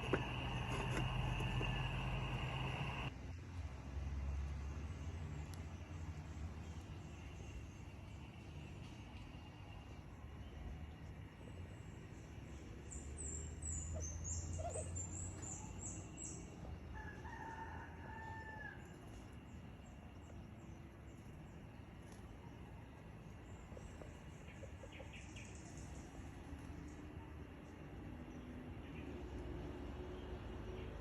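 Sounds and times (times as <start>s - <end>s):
low hum: 0.0s - 3.1s
rooster crowing: 0.0s - 3.1s, 16.8s - 19.0s.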